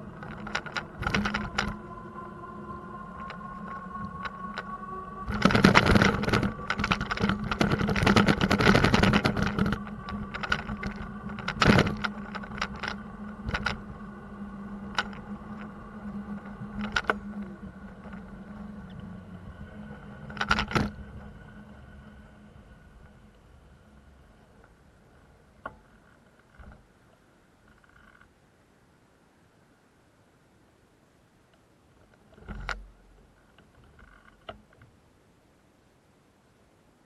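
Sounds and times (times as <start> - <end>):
bicycle rattling over rough pavement: 0.0 - 2.2, 3.2 - 21.4
steady hum: 0.0 - 37.0.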